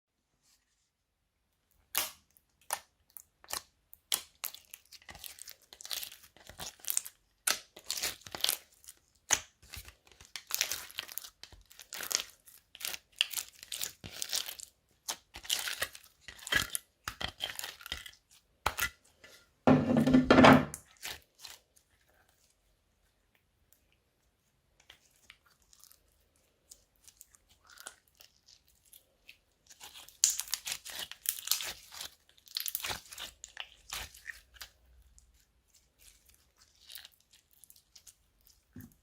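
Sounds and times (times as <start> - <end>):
slime squelch: 1.6 - 19.6, 20.7 - 39.0
slime crackling and popping: 1.9 - 18.8, 26.6 - 34.7.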